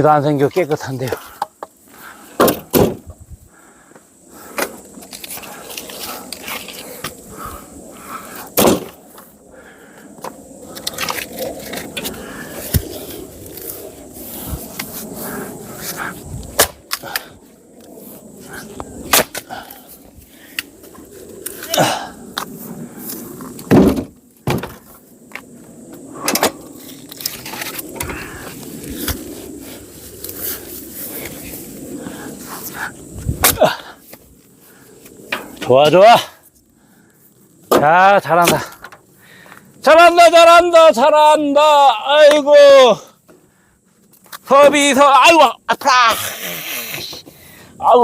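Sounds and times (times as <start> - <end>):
heavy wooden thud: 2.4 - 3.1, 23.7 - 24.8
firewood logs knocking and clattering: 23.6 - 25.4, 37.7 - 39.0.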